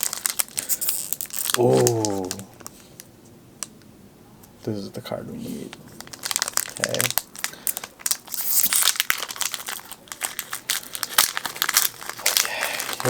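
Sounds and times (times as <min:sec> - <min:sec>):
foil pack tearing: 0:00.0 - 0:03.0, 0:05.9 - 0:13.0
foil wrapper crinkling: 0:00.0 - 0:03.7, 0:05.7 - 0:13.0.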